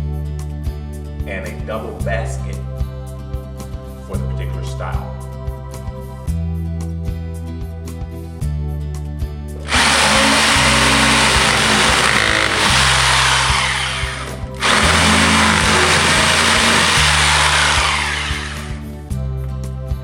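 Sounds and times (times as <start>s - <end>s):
background music: 0.0s - 20.0s
power tool running: 9.7s - 18.8s.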